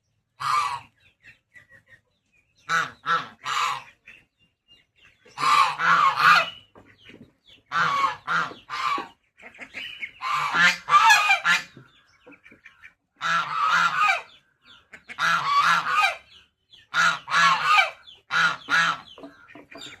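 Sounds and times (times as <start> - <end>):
geese honking: 0.4 - 1.8, 2.6 - 4.3, 5.1 - 20.0.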